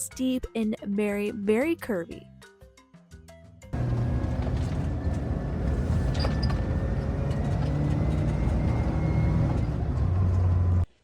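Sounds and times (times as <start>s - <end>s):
road rumble: 3.8s - 11.0s
van engine hum: 3.8s - 11.0s.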